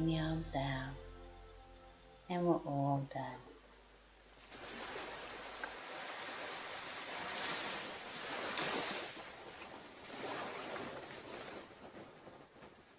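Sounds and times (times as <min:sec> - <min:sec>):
ocean waves washing on beach: 0:04.4 - 0:12.9.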